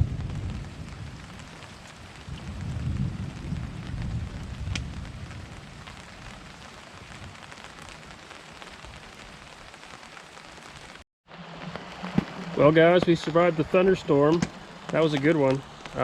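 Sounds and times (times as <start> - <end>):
low thunder rumble: 0.0 - 7.6
steady rain: 0.0 - 16.0.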